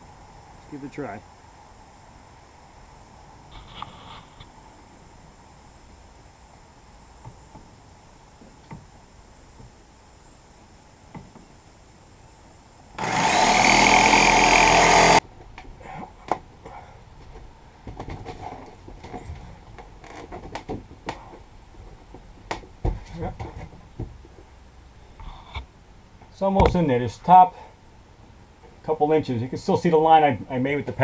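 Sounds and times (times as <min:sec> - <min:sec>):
power tool motor running: 0:13.0 - 0:15.2.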